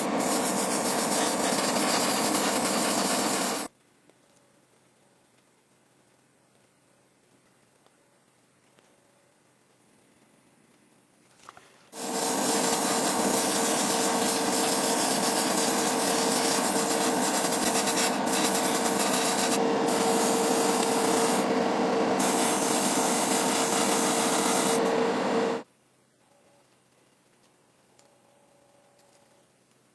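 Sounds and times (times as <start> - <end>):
electric sander grinding surface: 12.0 - 25.6.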